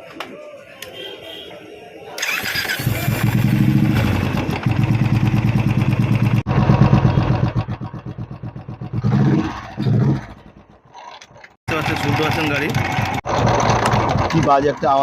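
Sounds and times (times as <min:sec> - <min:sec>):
motorcycle engine running: 0:02.8 - 0:11.0, 0:11.7 - 0:15.0
man talking: 0:14.3 - 0:15.0.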